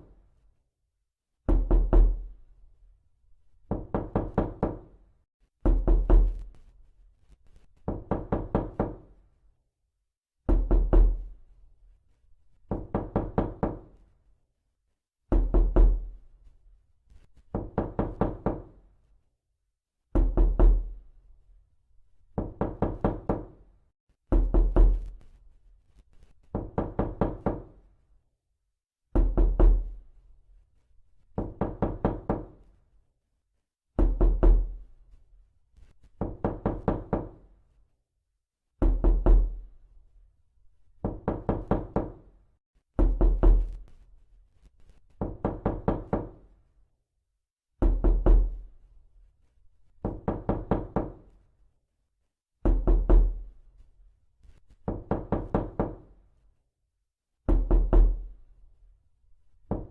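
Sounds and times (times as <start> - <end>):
knocking on a door: 1.5 - 2.3, 3.6 - 5.0, 5.6 - 6.5, 7.8 - 9.1, 10.5 - 11.4, 12.6 - 14.0, 15.3 - 16.1, 17.4 - 18.8, 20.1 - 21.0, 22.3 - 23.6, 24.3 - 25.2, 26.5 - 27.8, 29.1 - 30.0, 31.4 - 32.7, 34.0 - 34.8, 36.2 - 37.5, 38.8 - 39.6, 41.0 - 42.3, 43.0 - 43.9, 45.2 - 46.5, 47.8 - 48.6, 50.0 - 51.4, 52.6 - 53.4, 54.8 - 56.0, 57.5 - 58.3, 59.7 - 59.9.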